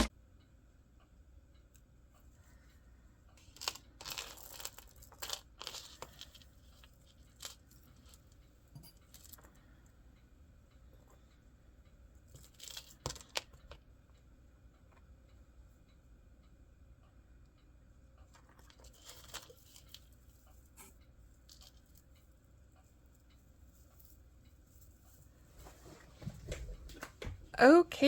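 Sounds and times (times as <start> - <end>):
small bag crinkling: 3.4 - 8.2, 18.7 - 20.1
beads and metal clicking: 3.4 - 9.6, 12.3 - 13.8, 18.3 - 25.3.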